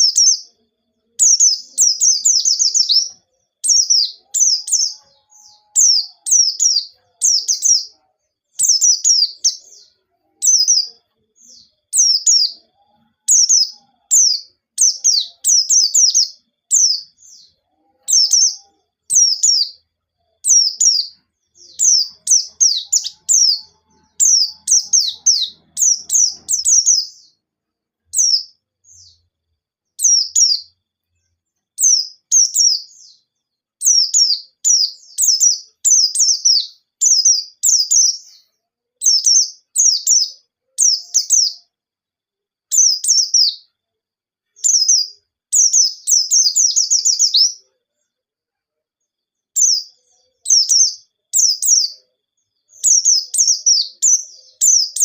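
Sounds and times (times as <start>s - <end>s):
bird chirping high falling notes: 20.5s - 27.4s.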